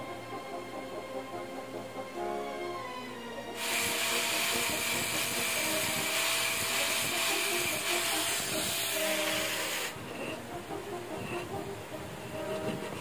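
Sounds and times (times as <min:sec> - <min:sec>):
faint background music: 0:00.0 - 0:13.0
loud steady hiss: 0:03.6 - 0:13.0.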